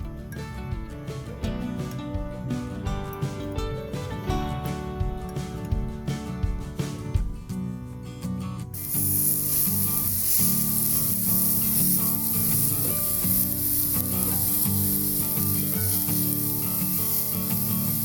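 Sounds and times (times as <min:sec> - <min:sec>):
background music: 0:00.0 - 0:18.0
steady hiss: 0:08.7 - 0:18.0.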